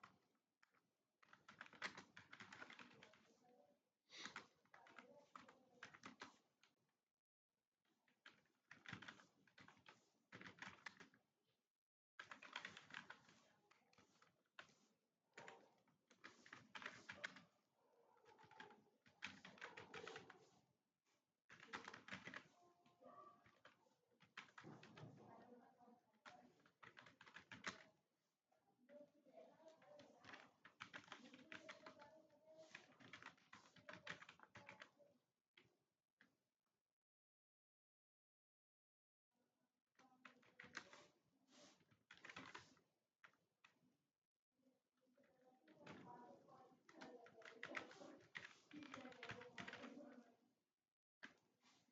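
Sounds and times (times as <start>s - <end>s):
rapid typing on computer keyboard: 0.0s - 3.4s, 4.1s - 6.8s, 8.1s - 11.2s, 12.2s - 17.5s, 18.3s - 20.6s, 21.5s - 25.2s, 26.2s - 27.9s, 29.7s - 35.0s, 40.2s - 43.4s, 45.7s - 46.1s, 46.8s - 50.1s.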